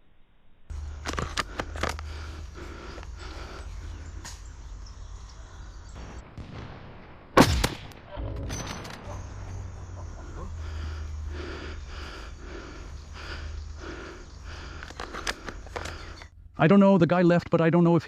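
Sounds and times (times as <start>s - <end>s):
low wind rumble: 0.7s - 16.7s
airsoft rifle shot: 7.4s - 8.0s.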